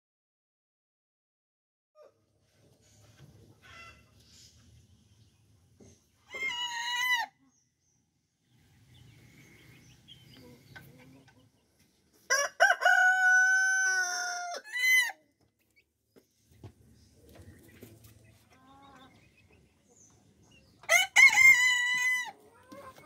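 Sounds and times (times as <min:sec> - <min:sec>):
rooster crowing: 0:12.3 - 0:15.2, 0:20.9 - 0:22.4.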